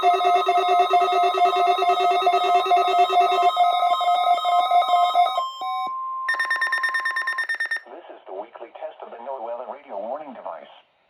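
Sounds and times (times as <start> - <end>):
rapid multi-tone electronic trill: 0.0 - 5.4
steady electronic tone: 0.0 - 5.9.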